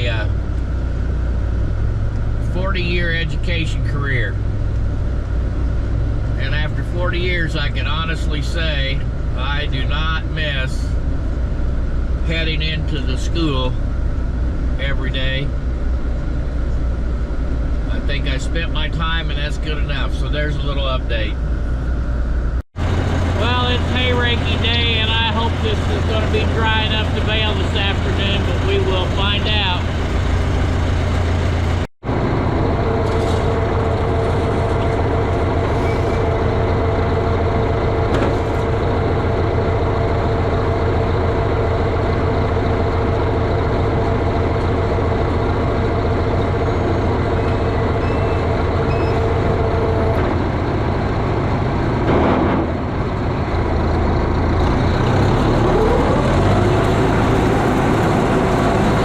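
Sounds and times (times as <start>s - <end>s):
steady whine: 0.0s - 54.6s
tractor engine running: 0.0s - 59.0s.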